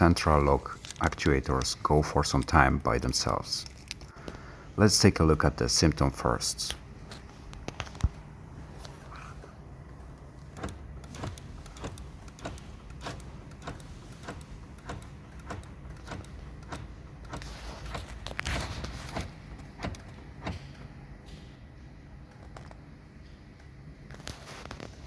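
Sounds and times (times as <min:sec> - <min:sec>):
door lock actuators clicking: 0:09.8 - 0:21.4.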